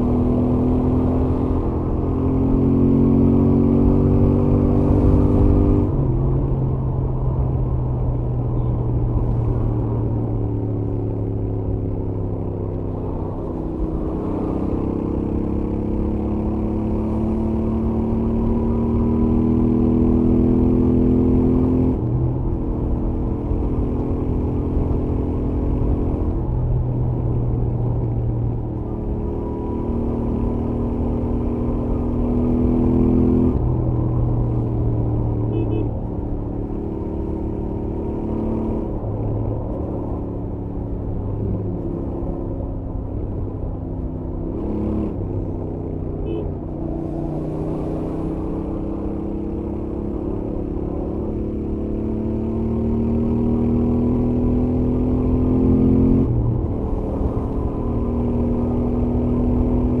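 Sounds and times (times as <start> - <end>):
motorcycle engine at highway speed: 0.0 - 60.0
constant low rumble: 5.8 - 16.0, 21.9 - 32.3, 33.1 - 51.6, 54.6 - 60.0.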